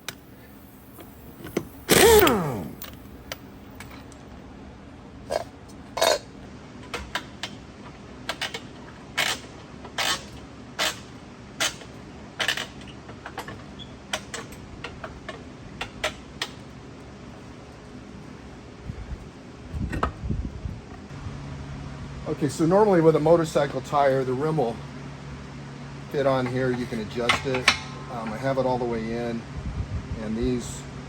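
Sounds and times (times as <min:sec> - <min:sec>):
metal tools clanking: 0:00.0 - 0:04.2, 0:26.2 - 0:28.6.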